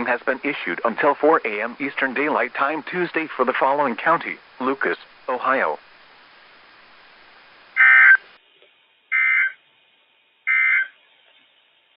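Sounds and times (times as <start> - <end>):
faint radio hiss: 0.0 - 12.0
short digital data bursts: 7.8 - 8.2, 9.1 - 9.6, 10.5 - 11.0.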